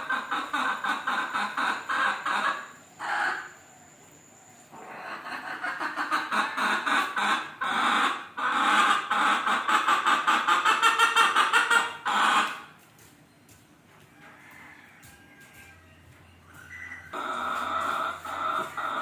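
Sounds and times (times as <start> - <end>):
hen cackling: 0.0 - 3.6, 4.7 - 12.8, 16.4 - 19.0.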